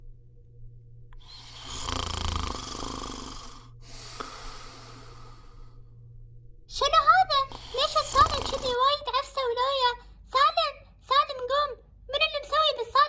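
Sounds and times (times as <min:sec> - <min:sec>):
loud snore: 0:01.2 - 0:05.8, 0:07.4 - 0:08.9.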